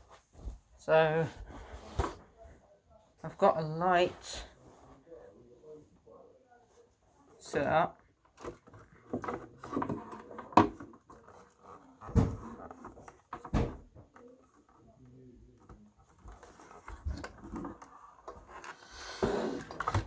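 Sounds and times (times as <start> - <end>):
rustling and scraping: 0.0 - 2.6, 8.0 - 20.0.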